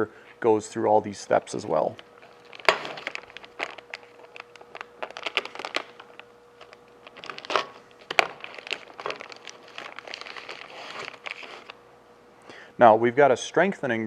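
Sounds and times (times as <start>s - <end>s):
faint steady hum: 0.0s - 14.0s
packaging crinkling and rustling: 1.3s - 11.8s.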